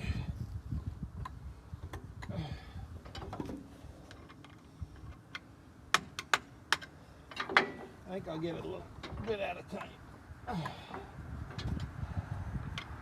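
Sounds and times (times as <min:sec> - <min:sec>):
clicks and knocks on steel parts: 0:03.0 - 0:08.0.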